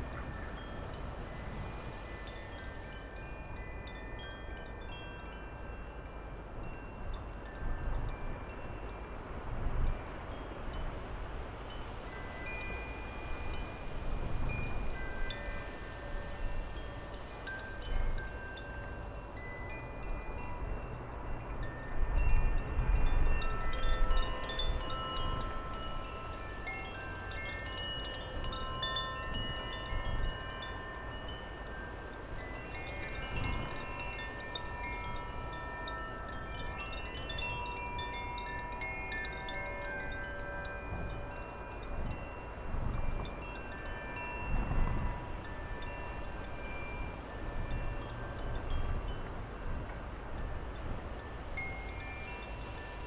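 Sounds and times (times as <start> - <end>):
wind chimes ringing: 0.0 - 53.0
wind rumble on microphone: 0.0 - 53.0.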